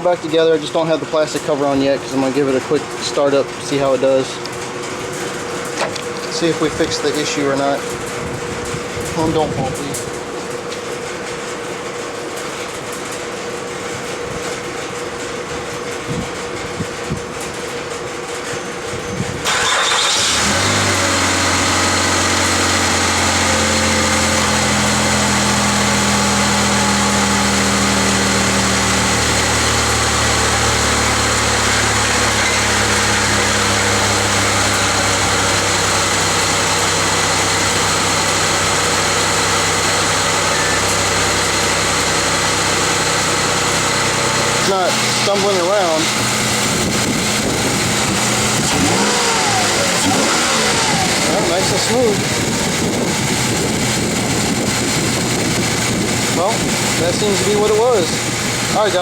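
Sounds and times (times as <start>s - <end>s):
car engine starting and idling: 19.4s - 59.0s.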